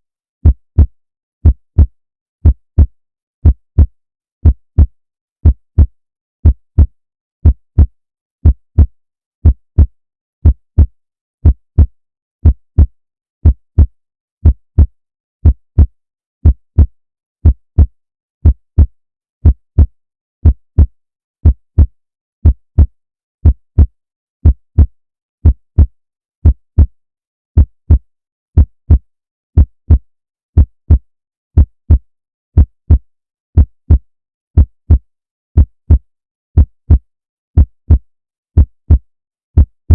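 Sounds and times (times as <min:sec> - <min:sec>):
heartbeat thumping: 0:00.4 - 0:18.6, 0:37.6 - 0:38.0.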